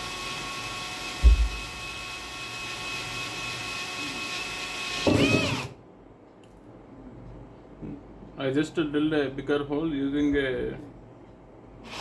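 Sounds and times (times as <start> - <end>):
electric drill boring: 0.0 - 5.8
low thump: 1.2 - 1.7.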